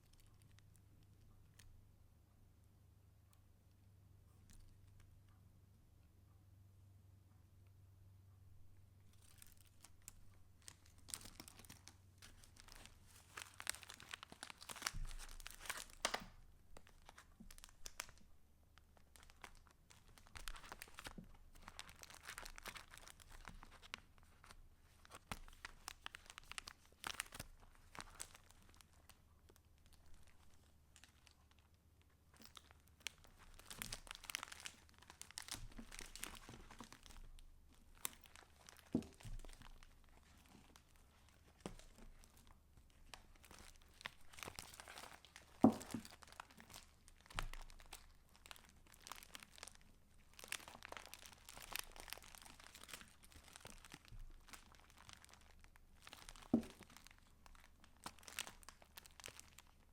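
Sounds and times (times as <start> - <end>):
paper pages rustling: 9.1 - 18.2.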